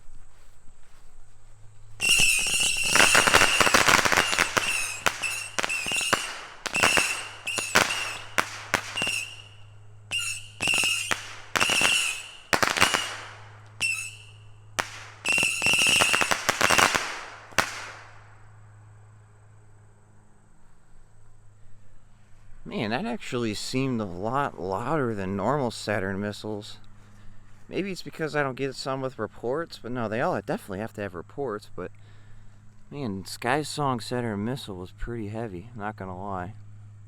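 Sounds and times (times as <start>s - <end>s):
firework cracks: 2.0s - 18.3s
whistling firework missiles: 2.0s - 18.3s.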